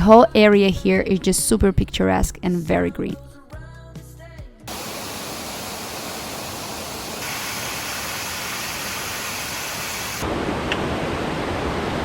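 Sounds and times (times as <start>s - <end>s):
small waterfall rushing: 4.7s - 12.0s.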